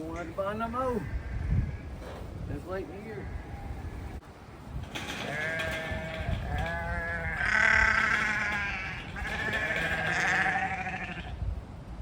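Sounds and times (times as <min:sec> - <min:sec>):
sheep bleating: 0:05.2 - 0:11.4.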